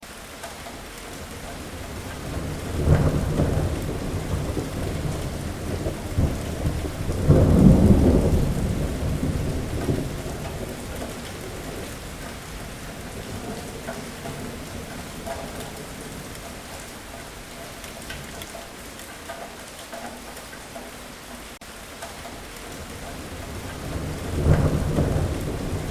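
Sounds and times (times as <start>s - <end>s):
heavy rain: 0.0s - 25.9s
thunder rolling: 1.4s - 17.0s, 22.8s - 25.9s.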